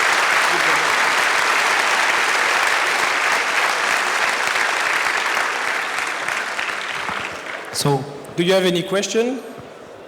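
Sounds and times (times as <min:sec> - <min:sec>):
audience applauding: 0:00.0 - 0:07.8.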